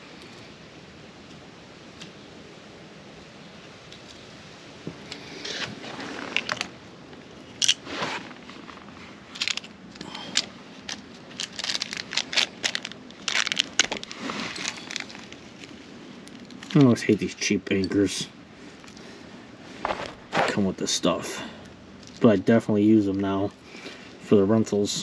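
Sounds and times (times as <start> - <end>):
packaging scraping and crackling: 5.2 - 17.0, 19.7 - 20.6.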